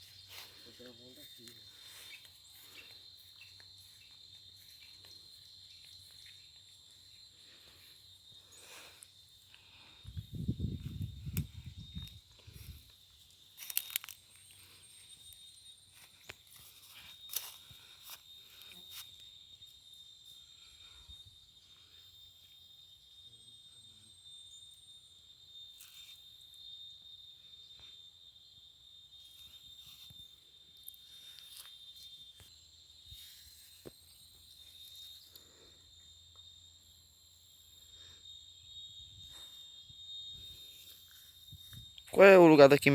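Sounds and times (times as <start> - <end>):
insect trill: 0.0 - 42.9
crackles and crunches: 13.6 - 14.4.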